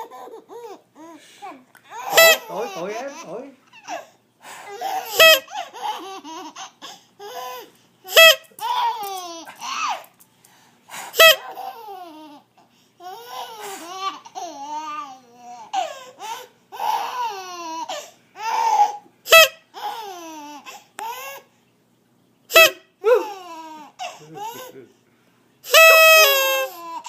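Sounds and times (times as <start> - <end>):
high-pitched laughing and squealing: 23.0 - 23.4.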